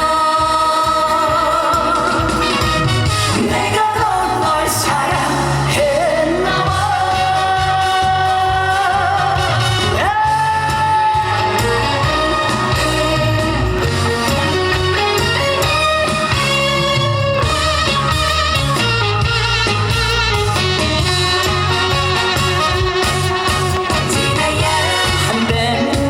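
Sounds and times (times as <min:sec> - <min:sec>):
man singing: 0:00.0 - 0:13.8, 0:24.0 - 0:26.0
band accompaniment: 0:00.0 - 0:26.0.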